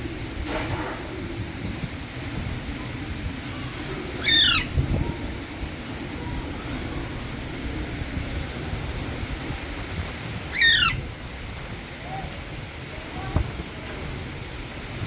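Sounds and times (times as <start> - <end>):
parakeet squawking: 4.2 - 4.8, 10.5 - 11.0.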